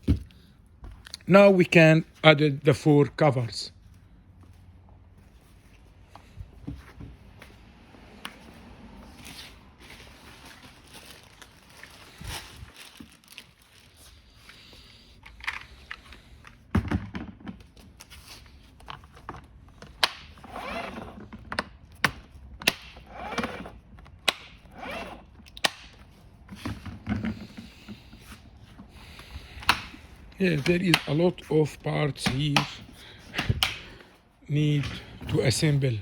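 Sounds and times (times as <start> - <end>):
plastic rustling and scraping: 8.4 - 36.0
plastic parts clicking and knocking: 15.2 - 17.9, 21.2 - 24.6, 29.2 - 31.2.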